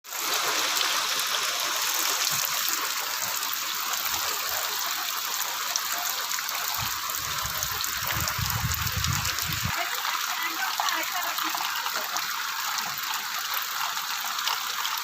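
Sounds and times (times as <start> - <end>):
steady rain falling: 0.0 - 15.0
low rumbling: 6.8 - 9.7.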